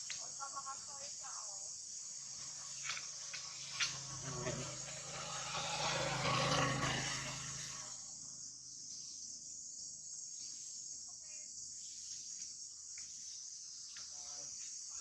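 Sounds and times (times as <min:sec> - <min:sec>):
insects droning: 0:00.0 - 0:15.0.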